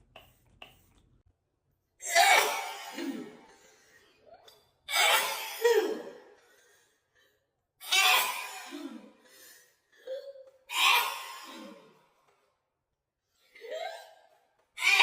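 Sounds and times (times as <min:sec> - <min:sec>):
woman sneezing: 0:02.0 - 0:03.5, 0:04.9 - 0:06.4, 0:07.8 - 0:09.2.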